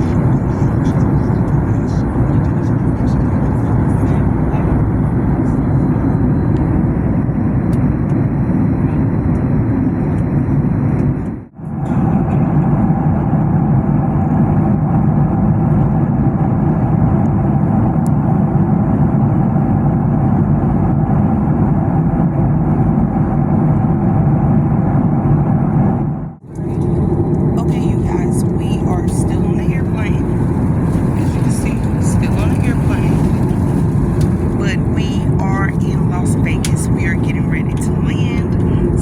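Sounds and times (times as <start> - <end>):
vehicle cabin noise: 26.4 - 39.0.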